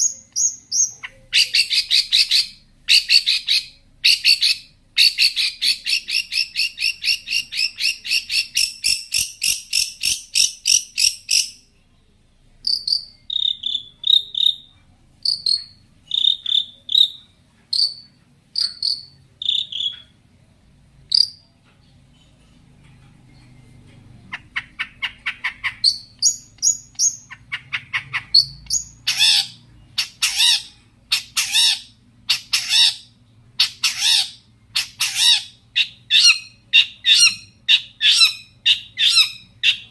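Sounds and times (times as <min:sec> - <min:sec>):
bird singing varied song: 0:00.0 - 0:11.7, 0:21.1 - 0:39.9.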